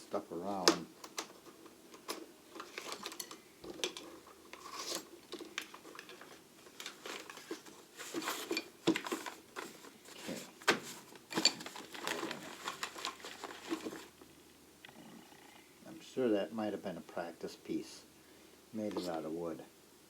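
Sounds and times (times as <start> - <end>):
tools clinking in drawer: 2.0 - 7.7, 11.3 - 11.8.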